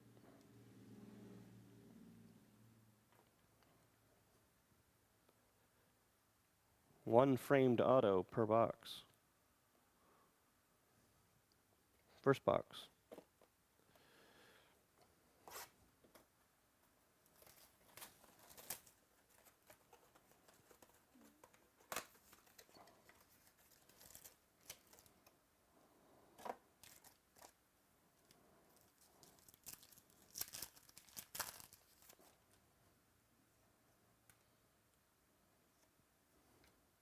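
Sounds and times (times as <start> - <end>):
packaging tearing and crinkling: 17.3 - 25.1, 26.8 - 27.6, 28.8 - 32.4.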